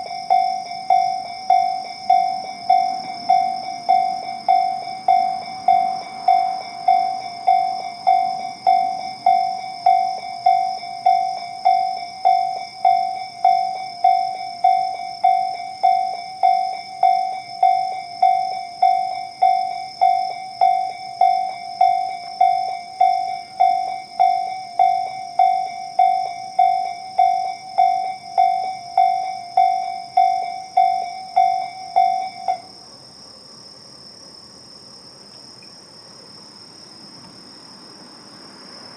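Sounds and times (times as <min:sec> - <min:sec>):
level crossing bell dinging: 0:00.0 - 0:32.7
insects chirping in a high trill: 0:00.0 - 0:38.9.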